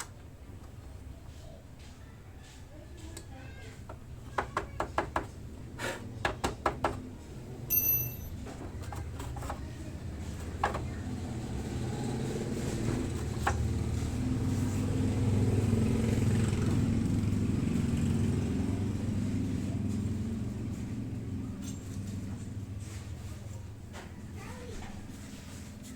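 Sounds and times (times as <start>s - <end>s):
motorcycle engine running: 10.0s - 25.9s.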